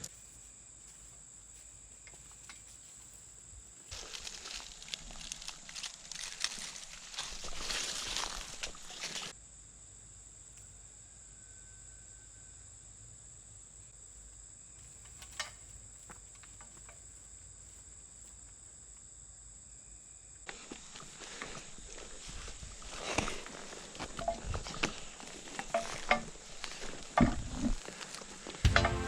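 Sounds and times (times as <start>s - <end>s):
rustling: 0.0s - 9.3s
crickets chirping: 0.0s - 29.0s.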